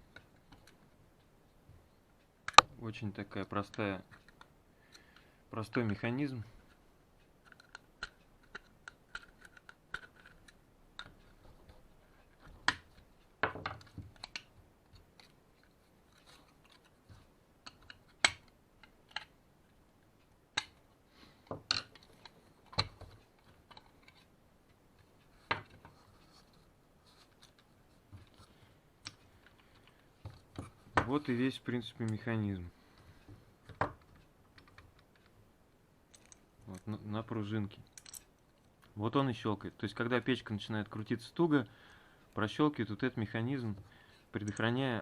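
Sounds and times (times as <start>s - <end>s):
plastic parts clicking and knocking: 0.0s - 0.9s, 2.4s - 2.8s, 7.4s - 19.4s, 20.5s - 32.3s, 33.0s - 35.4s, 36.1s - 37.0s, 37.8s - 39.0s.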